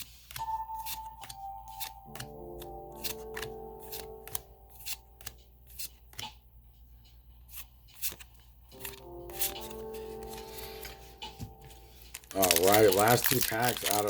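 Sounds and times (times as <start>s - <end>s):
soft background music: 0.0s - 14.0s
trading cards snapping: 0.2s - 6.4s, 12.1s - 14.0s.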